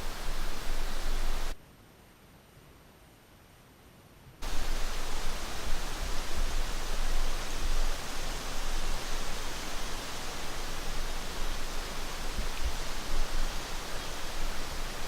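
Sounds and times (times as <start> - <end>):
wind rushing over microphone: 4.4 - 15.0.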